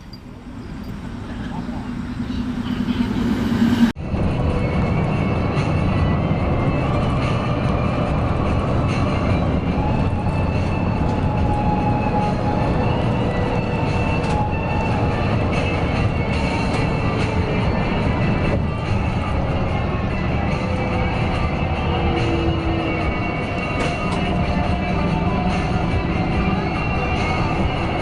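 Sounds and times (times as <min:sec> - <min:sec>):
faint steady whine: 0:00.0 - 0:04.0
coach engine and road rumble: 0:00.0 - 0:28.0.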